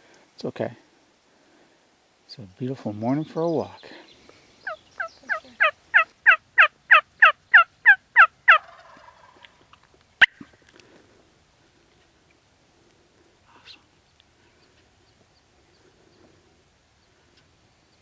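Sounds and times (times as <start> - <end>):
turkey yelps: 4.6 - 9.5.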